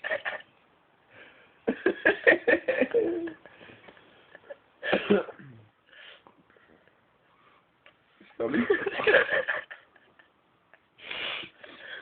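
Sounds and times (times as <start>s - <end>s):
person laughing: 1.7s - 3.5s.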